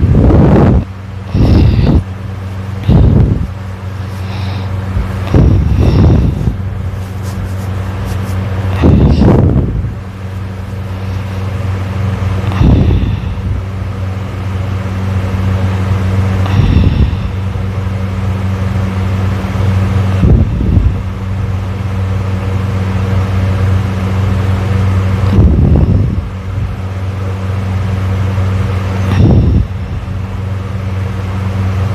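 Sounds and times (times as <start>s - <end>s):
steady low hum: 0.0s - 31.9s
person snoring loudly: 1.3s - 2.1s, 4.1s - 6.6s, 12.4s - 13.5s.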